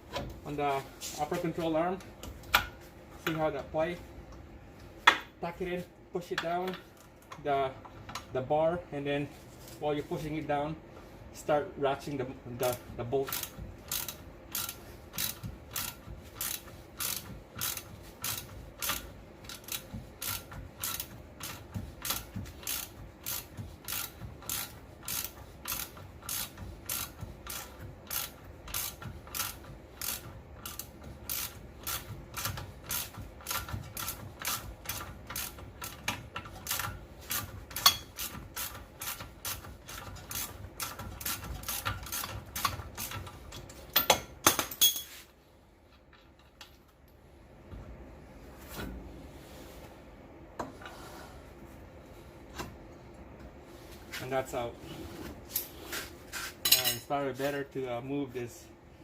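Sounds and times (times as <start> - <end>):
hand ratchet clicking: 12.6 - 44.2.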